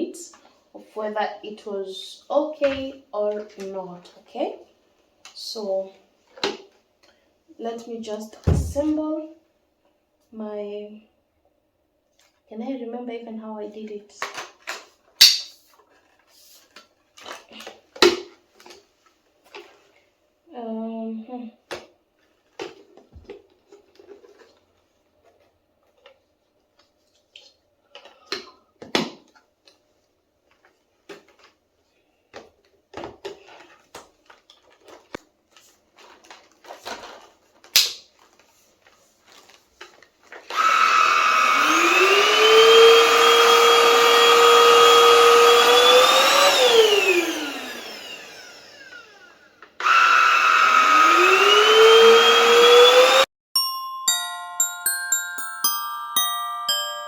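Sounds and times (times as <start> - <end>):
vacuum cleaner motor whine: 40.5 - 53.3.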